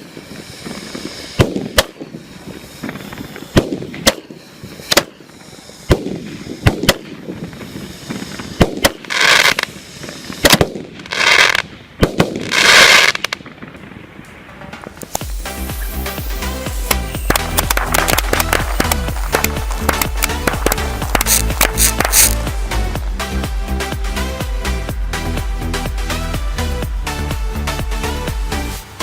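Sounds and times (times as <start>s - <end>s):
firework bangs: 0.0s - 22.7s
loud firework hissing bursts: 0.0s - 29.0s.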